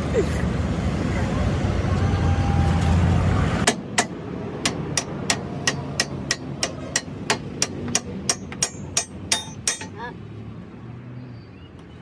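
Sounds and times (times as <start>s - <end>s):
hammer striking metal: 3.7s - 10.0s.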